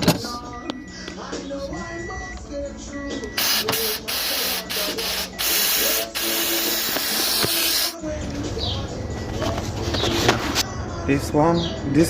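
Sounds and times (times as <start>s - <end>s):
compressed air blow gun hissing: 3.4s - 8.0s.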